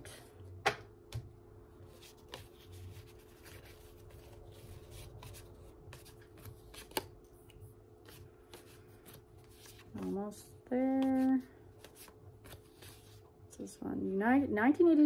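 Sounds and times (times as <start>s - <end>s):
faint steady hum: 0.0s - 15.0s
trading cards rustling: 1.9s - 13.2s.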